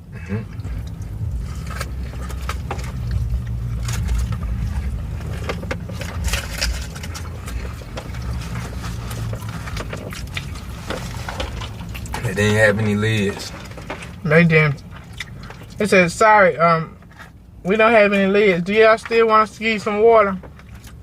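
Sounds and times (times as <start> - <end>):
low rumble: 0.0 - 15.8
chewing and crunching food: 0.0 - 15.9, 16.9 - 17.6, 18.2 - 21.0.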